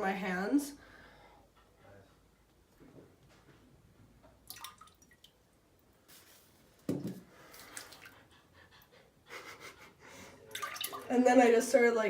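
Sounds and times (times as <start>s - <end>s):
liquid dripping and splashing: 4.4s - 5.5s, 7.5s - 8.2s, 10.5s - 11.2s.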